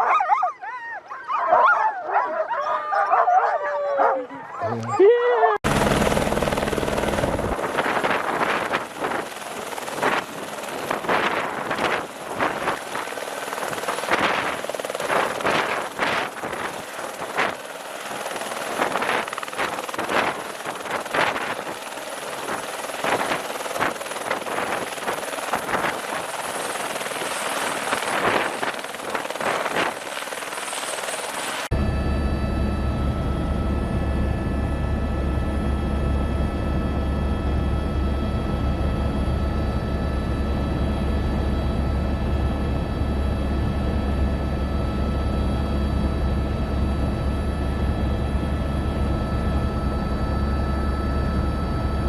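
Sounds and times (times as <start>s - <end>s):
helicopter rotor drone: 5.6s - 52.0s
gusty rushing noise: 5.8s - 16.9s.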